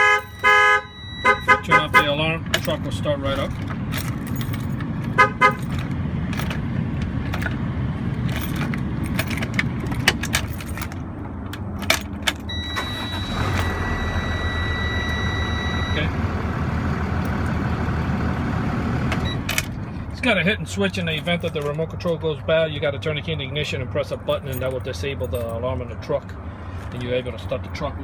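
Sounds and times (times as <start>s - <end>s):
alarm siren chirps: 0.0s - 1.7s, 12.5s - 16.2s
truck engine starting and running: 0.0s - 28.0s
steady electronic beep: 0.3s - 1.5s, 12.5s - 16.1s.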